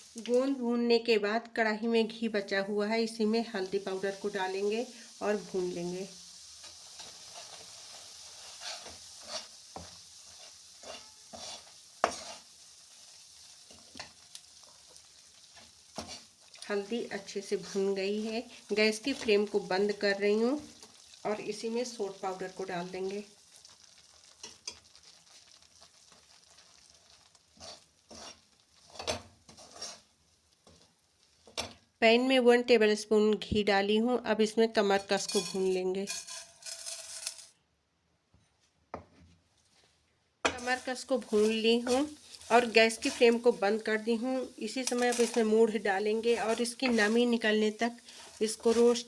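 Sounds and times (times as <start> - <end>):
spice sizzling in hot fat: 0.0 - 1.0, 1.9 - 32.0, 35.2 - 37.6, 40.5 - 49.0
spoon scraping pan: 6.6 - 20.0, 24.2 - 25.4, 26.0 - 31.8, 40.5 - 49.0.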